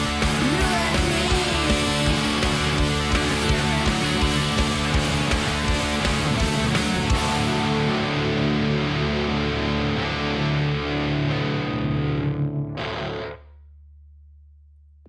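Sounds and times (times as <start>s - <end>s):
distorted electric guitar chord: 0.0s - 13.4s.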